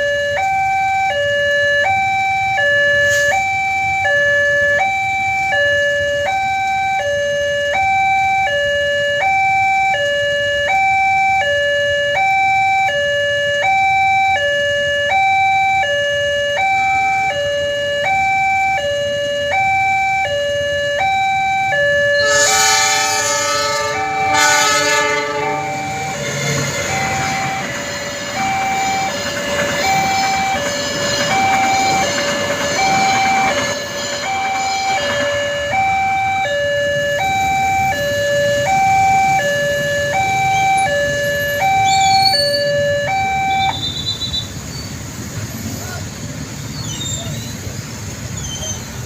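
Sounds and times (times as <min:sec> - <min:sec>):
level crossing alarm tones: 0:00.0 - 0:44.7
train passing: 0:00.0 - 0:49.0
train horn chord: 0:22.2 - 0:35.8.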